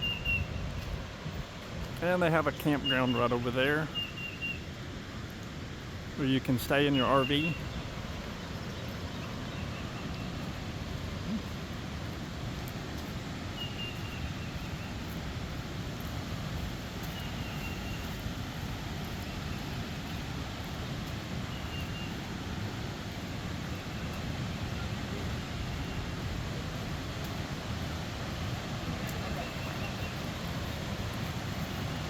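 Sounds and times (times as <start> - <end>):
wind rumble on microphone: 0.0 - 2.0.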